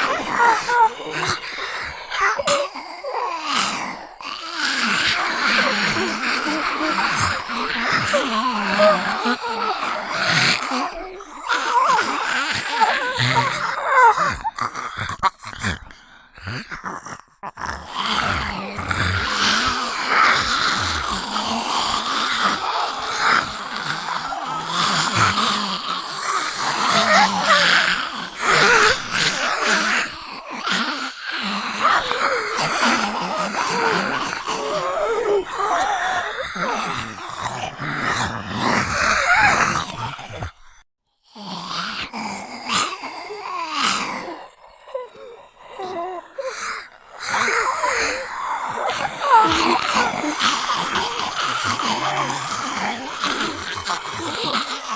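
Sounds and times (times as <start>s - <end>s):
person raspy groaning: 0.0s - 30.2s, 31.4s - 40.5s, 47.4s - 54.9s.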